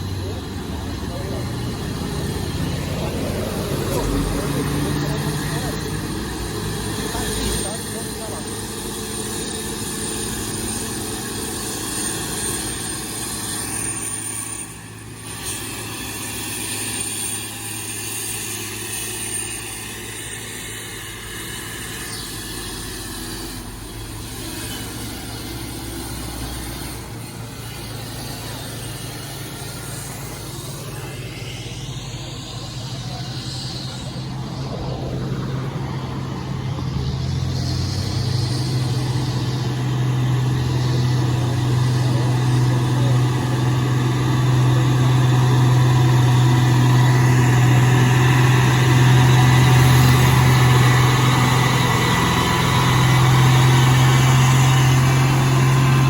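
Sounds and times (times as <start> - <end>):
heavy truck engine under load: 0.0 - 56.0.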